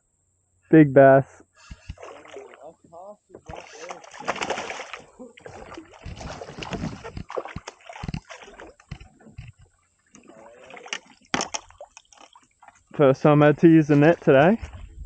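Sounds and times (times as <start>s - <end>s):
water splashing: 1.6s - 2.8s, 3.4s - 12.9s, 13.7s - 15.0s
knocks against a kayak: 10.9s - 11.7s.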